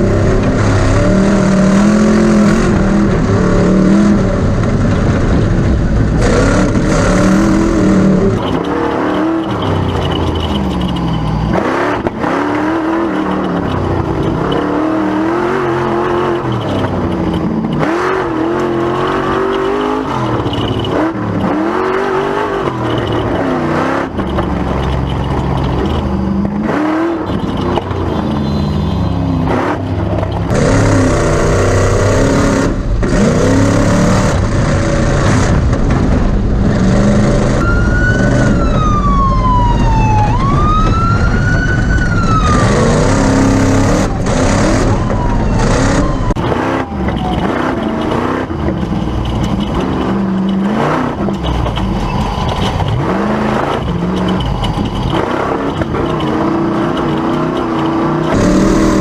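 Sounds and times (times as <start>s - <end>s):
truck engine revving: 0.0s - 59.0s
siren wailing: 37.5s - 48.7s.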